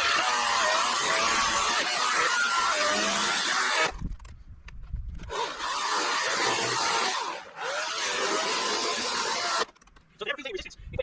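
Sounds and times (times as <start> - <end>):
electric chainsaw cutting wood: 0.0 - 4.0, 5.2 - 9.7.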